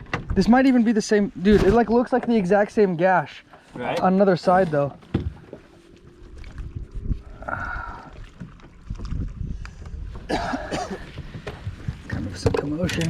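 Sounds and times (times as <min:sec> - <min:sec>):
handling thumps and knocks: 0:05.0 - 0:05.7, 0:08.4 - 0:13.0.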